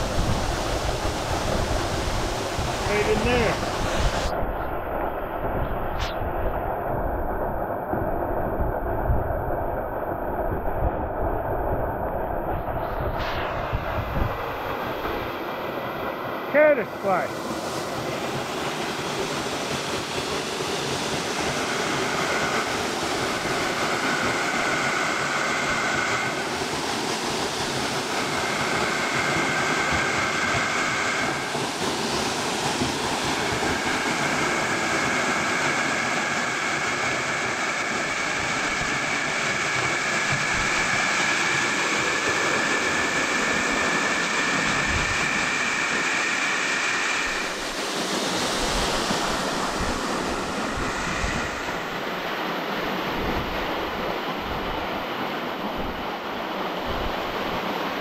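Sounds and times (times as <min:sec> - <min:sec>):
high two-tone whine: 0:28.0 - 0:54.7.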